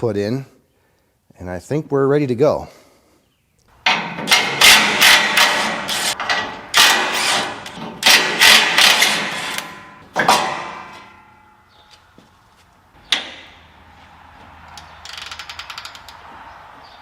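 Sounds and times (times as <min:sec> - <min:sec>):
metal clanking: 0:03.8 - 0:11.9.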